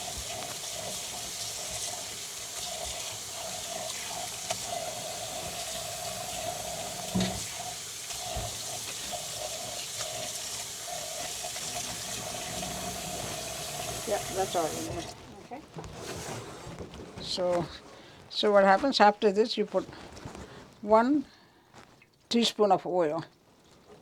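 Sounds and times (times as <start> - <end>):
tap water running: 0.0 - 15.2.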